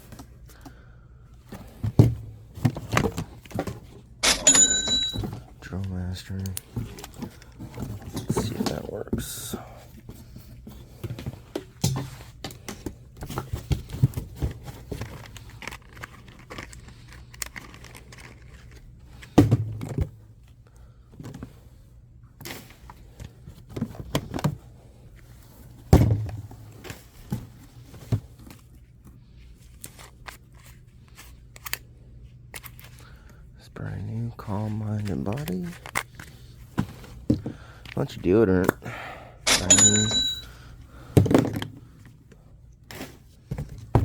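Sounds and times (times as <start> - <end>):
thuds of things set down: 1.6 - 3.9, 19.3 - 20.2, 25.9 - 28.3, 41.1 - 41.8
rustling packaging: 12.2 - 19.4, 26.4 - 38.3.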